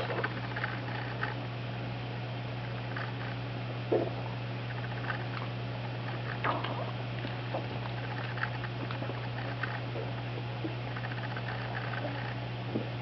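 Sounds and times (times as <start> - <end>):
steady low hum: 0.0 - 13.0
dog bowels gurgling and squeaking: 6.1 - 10.2.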